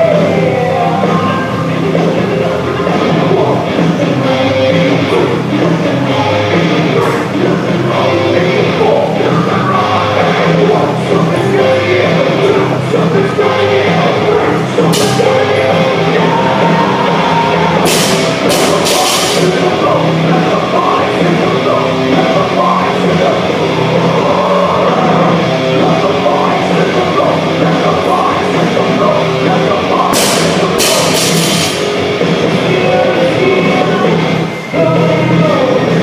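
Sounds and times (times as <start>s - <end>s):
heavy rock music with drums: 0.0s - 36.0s
sharp cymbal crashes: 17.8s - 19.6s, 30.1s - 32.1s.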